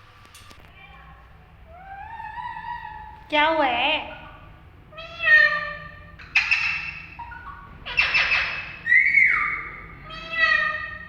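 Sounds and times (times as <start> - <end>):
parrot squawking: 1.7 - 3.3, 4.0 - 11.0.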